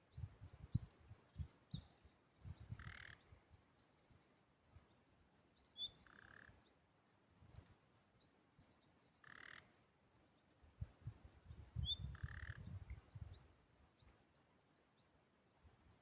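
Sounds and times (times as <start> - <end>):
frog calling: 2.8 - 3.2, 6.0 - 6.5, 9.2 - 9.7, 12.1 - 12.6.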